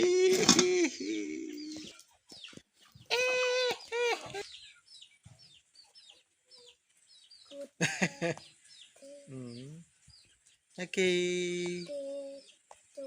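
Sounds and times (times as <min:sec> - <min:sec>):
chicken squawking: 0:03.0 - 0:04.6.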